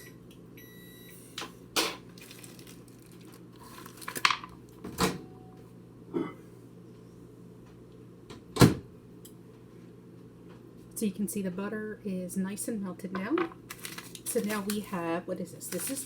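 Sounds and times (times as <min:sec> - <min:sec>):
packets rustling: 0:02.0 - 0:04.6, 0:13.6 - 0:15.0, 0:15.6 - 0:16.0.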